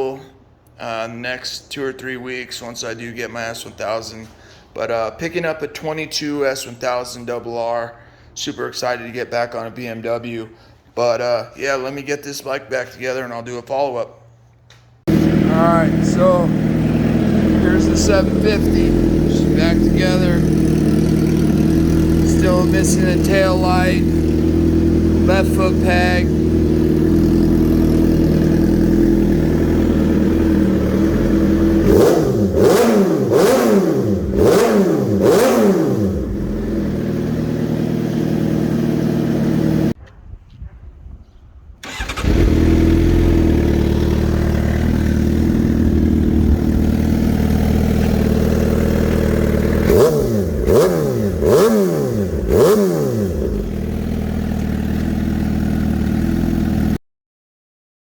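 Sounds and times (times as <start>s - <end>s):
motorcycle engine idling and revving: 15.1s - 40.0s, 41.8s - 57.0s.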